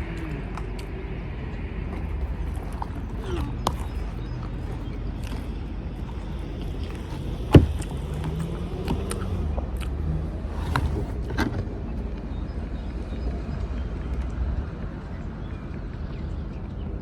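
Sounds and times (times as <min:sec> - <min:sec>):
crunching while eating: 0:00.0 - 0:11.5.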